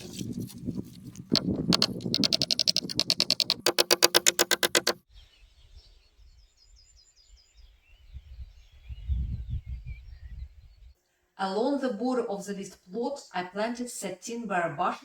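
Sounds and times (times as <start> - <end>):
faint bird chirps: 5.1 - 11.2.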